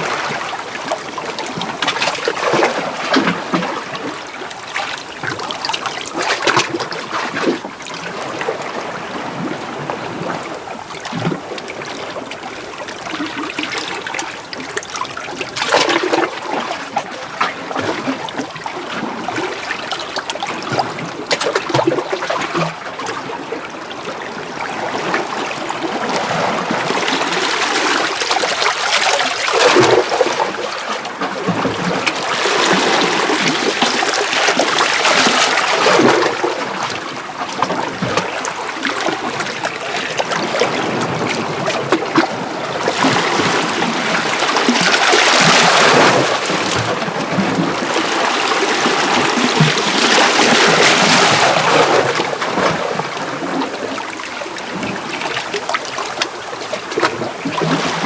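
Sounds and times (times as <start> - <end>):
sea waves washing over rocks: 24.2 - 58.0
loud water splashes: 40.2 - 53.6.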